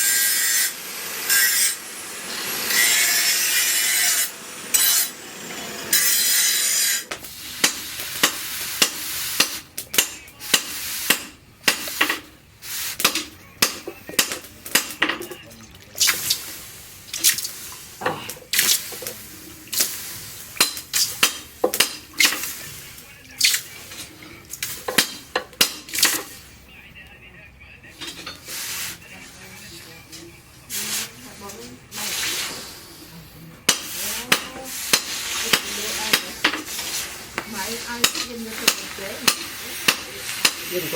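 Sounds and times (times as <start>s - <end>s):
metal filing rasp: 0.0s - 9.6s.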